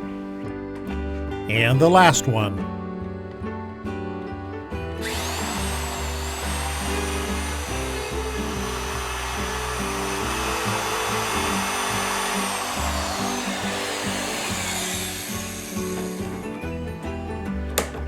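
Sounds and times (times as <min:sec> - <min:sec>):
background music: 0:01.4 - 0:03.2
electric router whining: 0:05.0 - 0:16.4.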